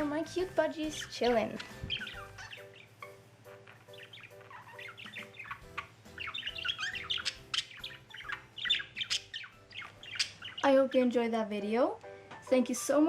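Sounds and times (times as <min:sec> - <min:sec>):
budgies chirping and chattering: 0:00.0 - 0:11.3.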